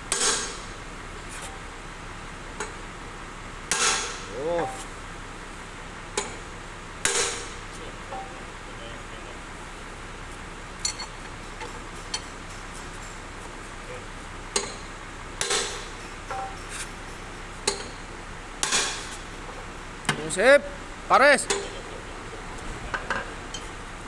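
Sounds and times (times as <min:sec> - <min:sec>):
metal tools clanking: 0:10.8 - 0:13.3.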